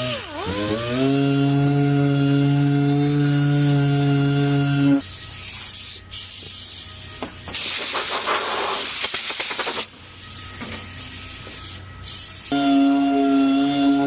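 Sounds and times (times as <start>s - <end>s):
air spray hissing: 5.0s - 12.6s.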